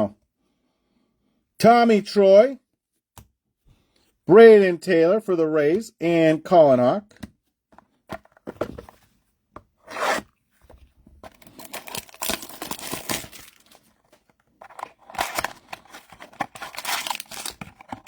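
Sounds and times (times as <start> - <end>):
foil wrapper tearing and crinkling: 11.3 - 13.9, 14.7 - 18.0.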